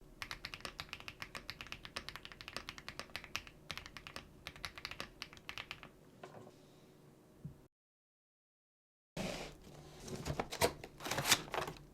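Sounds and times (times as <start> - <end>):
typing on a membrane keyboard: 0.2 - 5.9.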